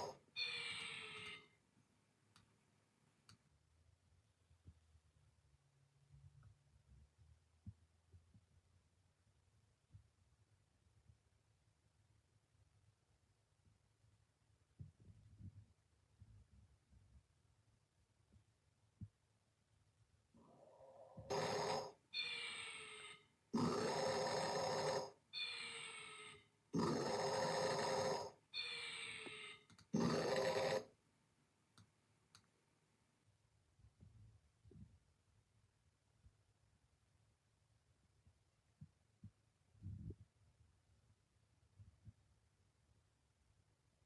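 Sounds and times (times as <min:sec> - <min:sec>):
person snoring: 0:20.6 - 0:23.0, 0:23.6 - 0:25.2, 0:26.8 - 0:28.4, 0:30.0 - 0:30.9.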